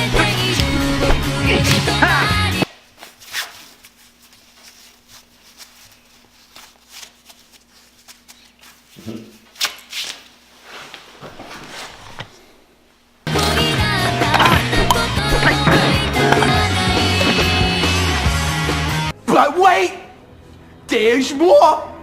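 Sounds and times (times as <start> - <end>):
loud music: 13.3 - 19.1.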